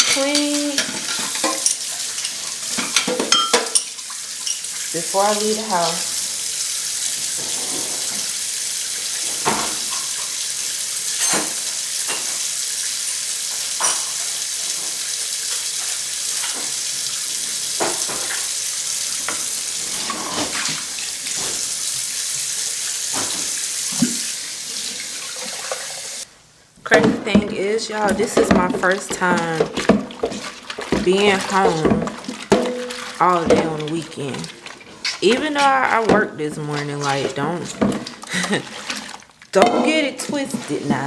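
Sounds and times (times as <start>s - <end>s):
dishes clinking: 0.0s - 5.4s, 7.2s - 8.4s, 9.2s - 16.9s, 17.7s - 18.6s, 23.1s - 24.3s, 26.9s - 34.4s
tap running into sink: 9.1s - 12.5s, 13.1s - 26.2s.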